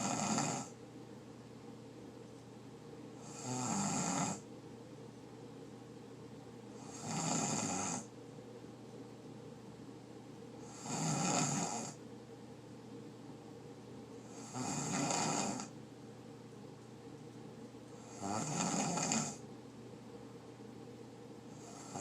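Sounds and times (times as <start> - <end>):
person snoring loudly: 0.0 - 0.7, 3.2 - 4.4, 6.8 - 8.1, 10.6 - 12.0, 14.3 - 15.7, 18.0 - 19.4, 21.6 - 22.0.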